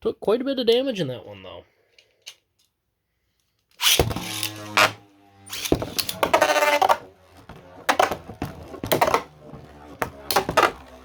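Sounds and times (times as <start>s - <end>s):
spinning tops whirring launches: 3.8s - 11.0s.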